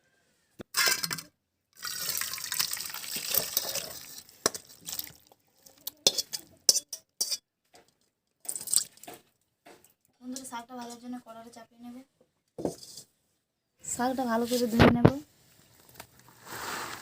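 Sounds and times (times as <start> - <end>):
pots and utensils clinking: 0.7 - 1.3, 3.1 - 5.4, 6.0 - 8.0
water pouring and splashing: 1.8 - 6.0, 8.4 - 9.3.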